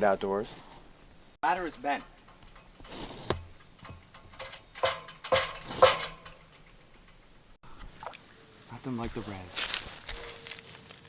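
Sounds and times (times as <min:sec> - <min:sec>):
sharp hard knocks and clanks: 0:02.0 - 0:07.6.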